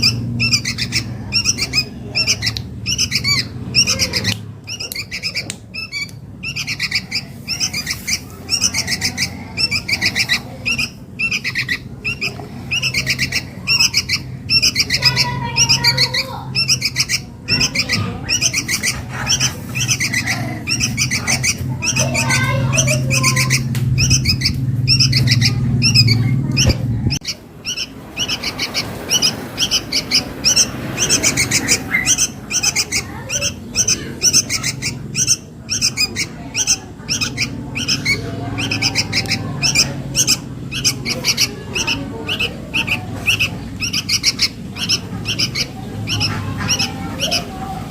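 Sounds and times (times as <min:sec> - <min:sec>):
bird chicks begging chirps: 0:00.0 - 0:47.9.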